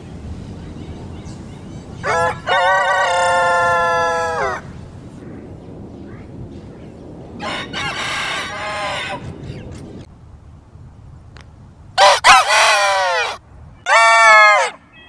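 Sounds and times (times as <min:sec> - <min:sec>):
rooster crowing: 0:02.0 - 0:04.7, 0:07.4 - 0:09.3, 0:12.0 - 0:14.8.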